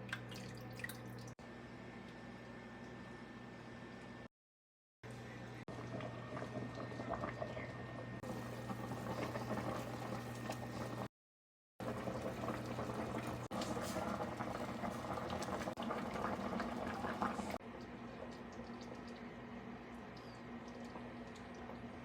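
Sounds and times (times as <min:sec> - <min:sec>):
soup bubbling in a pot: 0:05.7 - 0:11.1, 0:11.8 - 0:22.0.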